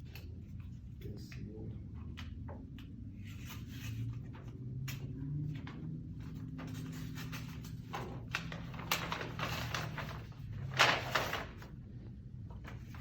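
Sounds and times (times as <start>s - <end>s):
low steady hum: 0.0s - 13.0s
paper rustling and tearing: 6.2s - 11.8s.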